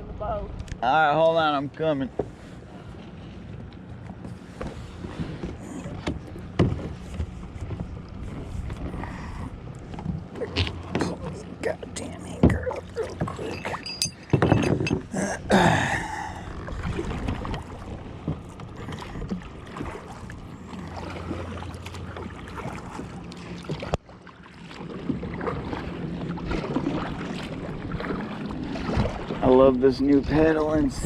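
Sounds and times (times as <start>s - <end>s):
paddle splashing in water: 4.2s - 11.4s, 12.4s - 14.5s, 16.3s - 29.8s
anchor knocking and clattering: 13.6s - 15.1s.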